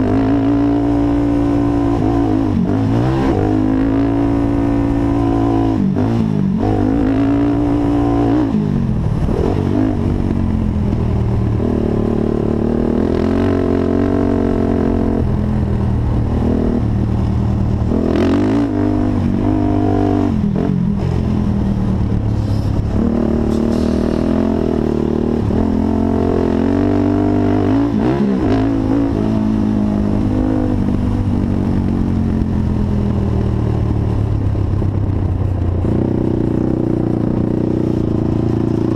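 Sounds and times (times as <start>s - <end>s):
quad bike engine revving: 0.0s - 17.0s, 17.7s - 21.2s, 22.1s - 32.5s.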